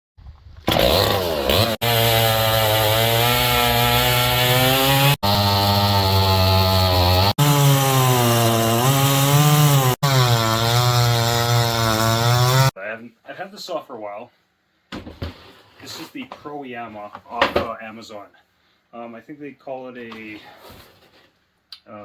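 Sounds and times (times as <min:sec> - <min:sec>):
chainsaw cutting wood: 0:00.6 - 0:12.8.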